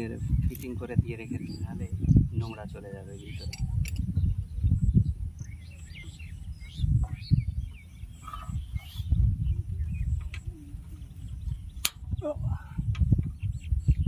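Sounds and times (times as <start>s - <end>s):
small birds chirping: 0.0s - 14.0s
sharp click: 11.8s - 12.0s.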